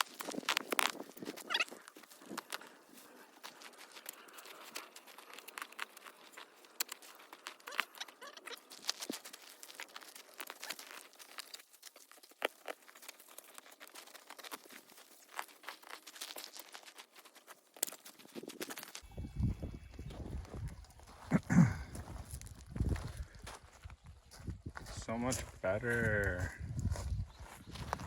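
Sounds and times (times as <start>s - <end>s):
shrub branches rustling and snapping: 0.0s - 19.0s.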